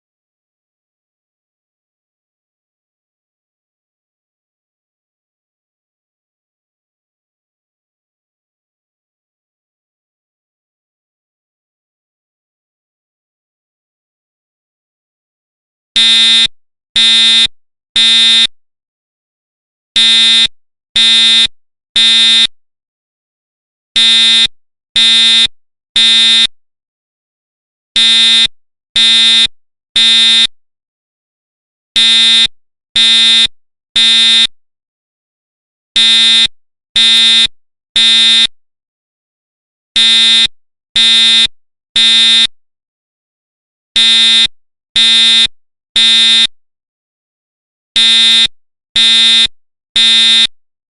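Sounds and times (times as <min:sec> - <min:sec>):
fire alarm horn buzzing: 0:16.0 - 0:18.5, 0:20.0 - 0:22.5, 0:24.0 - 0:26.5, 0:28.0 - 0:30.5, 0:32.0 - 0:33.4, 0:34.0 - 0:34.4, 0:36.0 - 0:37.4, 0:38.0 - 0:38.5, 0:40.0 - 0:42.5, 0:44.0 - 0:46.5, 0:48.0 - 0:50.5.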